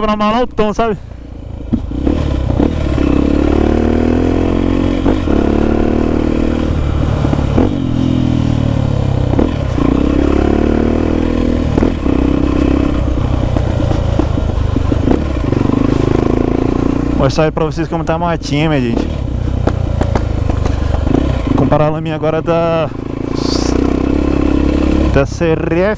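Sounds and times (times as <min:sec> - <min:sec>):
motorcycle engine revving: 0:00.0 - 0:25.9
exhaust pops: 0:18.8 - 0:21.8.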